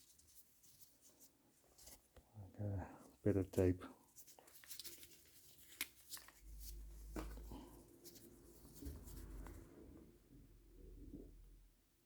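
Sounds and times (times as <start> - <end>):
tape handling clicks and rustles: 4.2 - 7.5.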